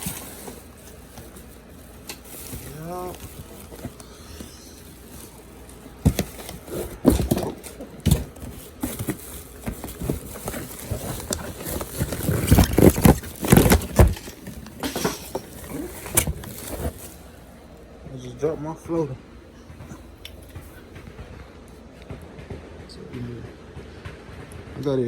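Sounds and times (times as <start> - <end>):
packaging rustling: 0.0 - 17.9.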